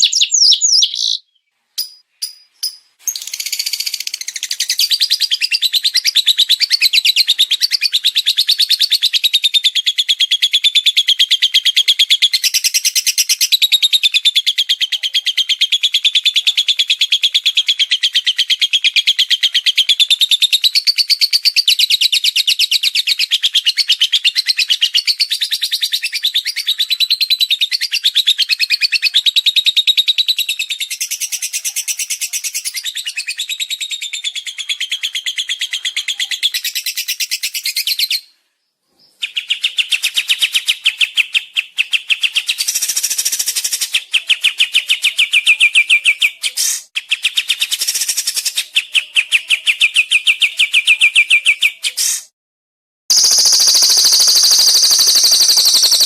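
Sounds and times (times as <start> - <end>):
songbird trilling and chirping: 0.0 - 38.3, 53.1 - 56.0.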